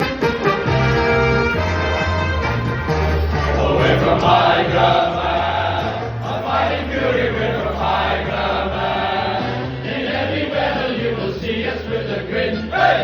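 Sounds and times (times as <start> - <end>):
men chanting together: 3.4 - 13.0.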